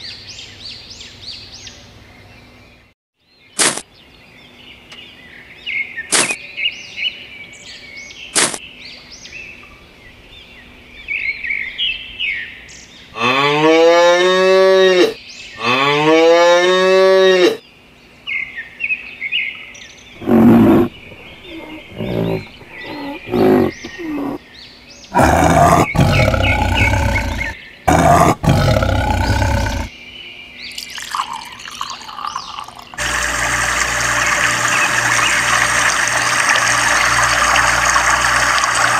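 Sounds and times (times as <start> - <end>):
animal calls: 20.2 - 24.4, 25.1 - 29.9
bird chirps: 20.2 - 24.4
cows mooing: 20.2 - 24.4, 25.2 - 29.9
flowing water rushing: 20.2 - 24.4, 33.0 - 38.9.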